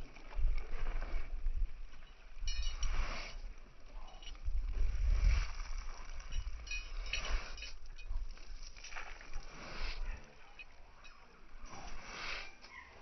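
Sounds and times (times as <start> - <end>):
wind buffeting microphone: 4.2 - 8.6.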